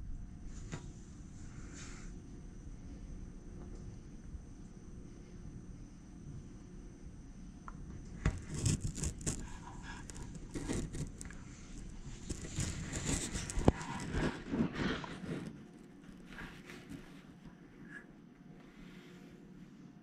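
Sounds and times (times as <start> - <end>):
microphone handling noise: 8.2 - 15.6.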